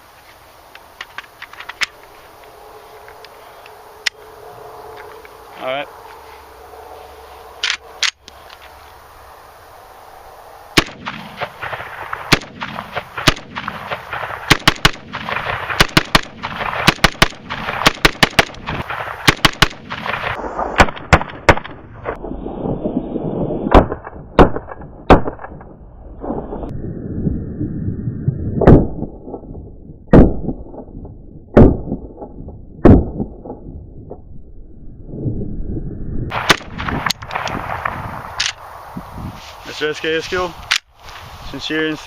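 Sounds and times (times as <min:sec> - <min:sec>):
sharp gun clicks: 0:07.6 - 0:08.6, 0:12.3 - 0:20.0, 0:40.7 - 0:40.9
pistol gunshots: 0:10.8 - 0:21.7, 0:23.7 - 0:25.5, 0:36.3 - 0:37.1.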